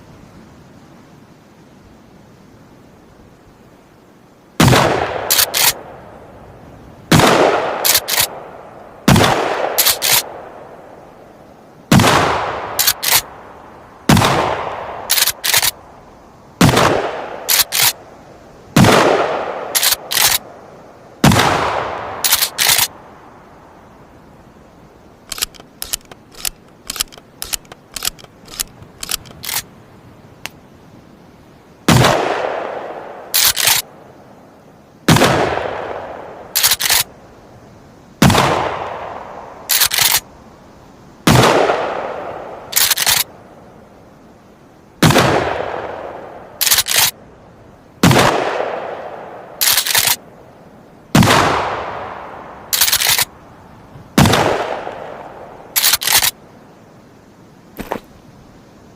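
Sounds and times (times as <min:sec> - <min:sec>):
shotgun shots booming: 0:04.6 - 0:05.8, 0:07.1 - 0:08.5, 0:09.1 - 0:10.4, 0:11.9 - 0:13.3, 0:14.1 - 0:15.7, 0:16.6 - 0:18.0, 0:18.8 - 0:20.4, 0:21.2 - 0:22.9, 0:31.9 - 0:33.8, 0:35.1 - 0:37.0, 0:38.2 - 0:39.2, 0:41.3 - 0:43.2, 0:45.0 - 0:47.0, 0:48.0 - 0:50.2, 0:51.1 - 0:52.2, 0:54.2 - 0:55.1
short clicks: 0:05.3 - 0:05.8, 0:07.8 - 0:08.3, 0:09.8 - 0:10.3, 0:12.8 - 0:13.3, 0:15.1 - 0:15.8, 0:17.5 - 0:18.0, 0:19.8 - 0:20.4, 0:22.2 - 0:22.9, 0:25.3 - 0:29.7, 0:33.4 - 0:33.8, 0:36.6 - 0:37.1, 0:39.7 - 0:40.2, 0:42.7 - 0:43.3, 0:46.6 - 0:47.1, 0:49.6 - 0:50.2, 0:52.7 - 0:53.3, 0:55.8 - 0:56.4
shotgun pump racking clacks: 0:05.3 - 0:05.8, 0:07.8 - 0:08.3, 0:09.8 - 0:10.2, 0:12.8 - 0:13.2, 0:15.1 - 0:15.7, 0:17.5 - 0:17.9, 0:19.8 - 0:20.4, 0:22.2 - 0:22.9, 0:25.3 - 0:29.6, 0:33.4 - 0:33.8, 0:36.6 - 0:37.0, 0:39.7 - 0:40.2, 0:42.8 - 0:43.2, 0:46.6 - 0:47.1, 0:49.6 - 0:50.2, 0:52.8 - 0:53.3, 0:55.8 - 0:56.3.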